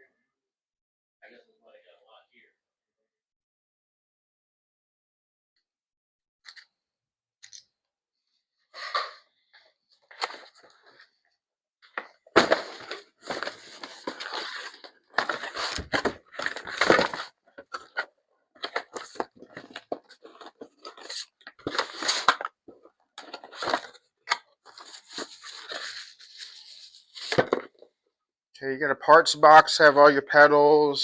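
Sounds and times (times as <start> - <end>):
packaging crinkling and tearing: 12.4 - 22.6.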